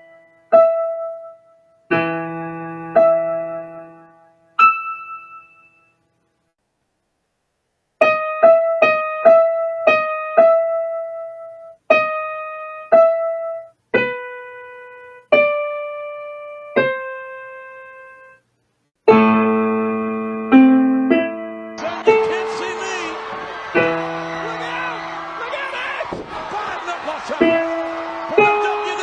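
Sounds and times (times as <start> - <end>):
piano music: 0.0 - 6.0, 8.0 - 18.4, 19.1 - 29.0.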